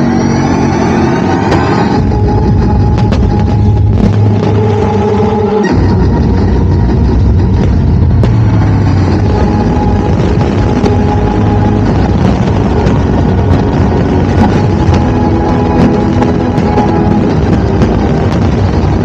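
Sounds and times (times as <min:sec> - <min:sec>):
fireworks crackles: 0:01.3 - 0:19.0
fireworks shell bursts rumbling: 0:05.8 - 0:19.0.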